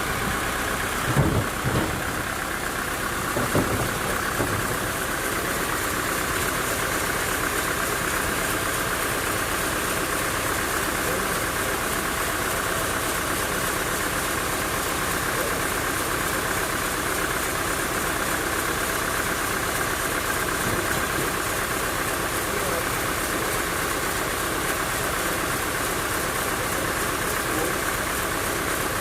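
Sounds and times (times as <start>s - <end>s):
sawmill machinery running: 0.0s - 29.0s
short knocks: 1.0s - 2.5s, 3.2s - 5.0s.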